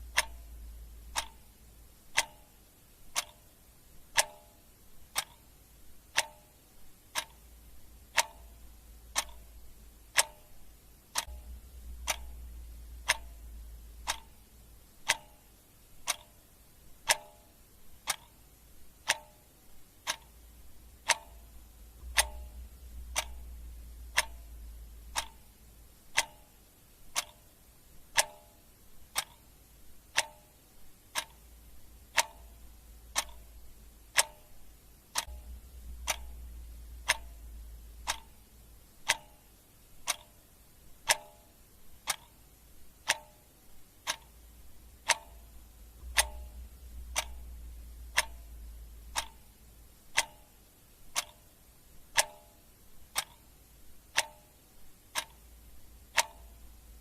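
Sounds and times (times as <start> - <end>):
clock ticking: 0.0 - 57.0
low rumble: 11.3 - 14.2, 21.6 - 25.9, 35.3 - 38.2, 45.4 - 49.8.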